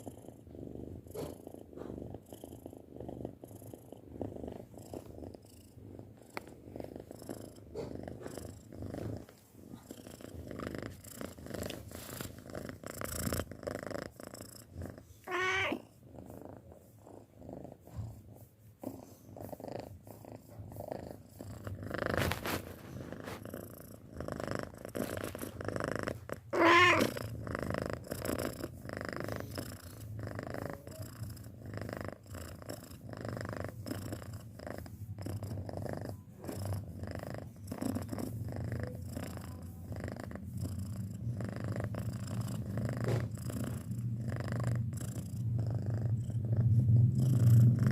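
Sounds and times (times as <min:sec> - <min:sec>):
cat purring: 0:00.0 - 0:47.9
cat calling: 0:15.2 - 0:15.8, 0:26.6 - 0:27.1.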